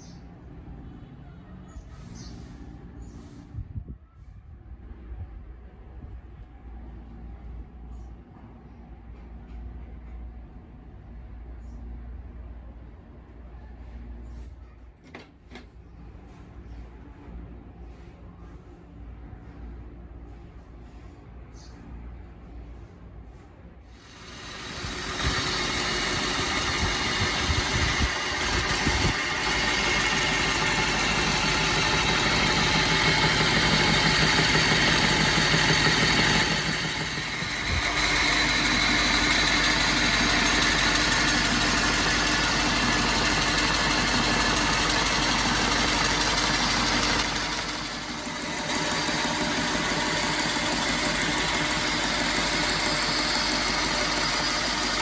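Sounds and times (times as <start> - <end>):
belt grinder running: 24.0 - 55.0.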